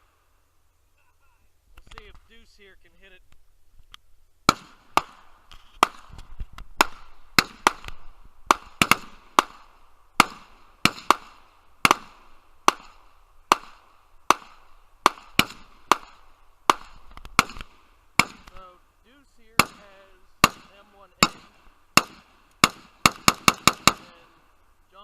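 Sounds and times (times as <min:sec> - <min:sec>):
gunshots with echo: 0:04.5 - 0:06.1, 0:06.8 - 0:18.7, 0:19.5 - 0:24.3.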